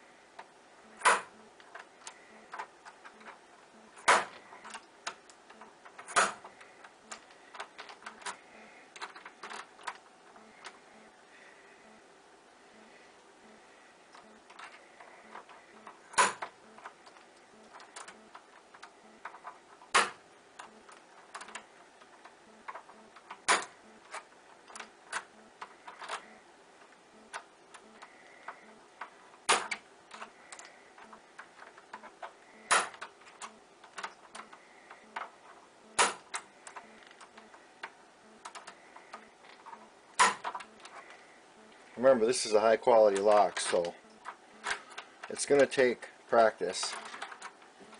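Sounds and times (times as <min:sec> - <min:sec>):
key clicking and rattling: 0:04.0 - 0:10.8, 0:14.1 - 0:37.5.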